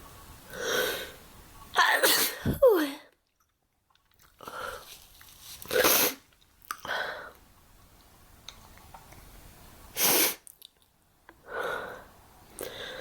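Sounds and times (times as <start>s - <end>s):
person breathing in: 11.4s - 13.0s.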